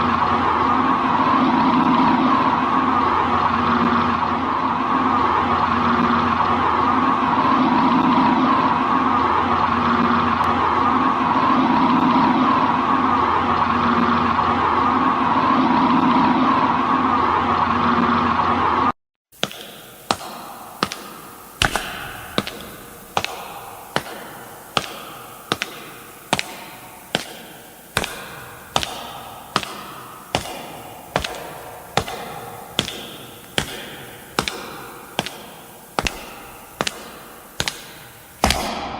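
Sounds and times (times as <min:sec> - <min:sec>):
loud steady sound effect: 0:19.4 - 0:38.9
sharp ringing hits: 0:19.4 - 0:38.9.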